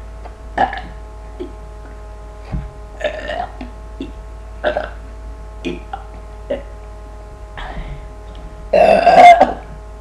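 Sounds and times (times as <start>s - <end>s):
person burping loudly: 0.6s - 1.6s, 3.0s - 5.0s, 5.6s - 6.7s, 8.7s - 9.8s.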